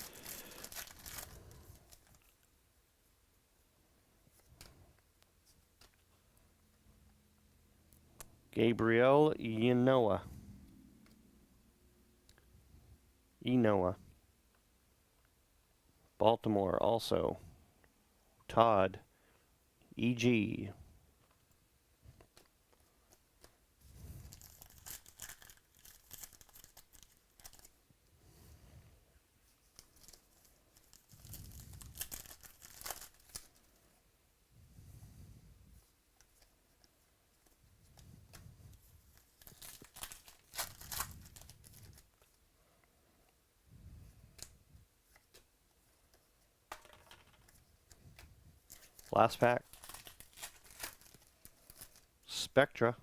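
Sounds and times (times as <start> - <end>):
wrappers tearing and crinkling: 0.0 - 2.3, 24.2 - 27.8, 29.8 - 33.7, 39.1 - 42.2, 48.7 - 52.1.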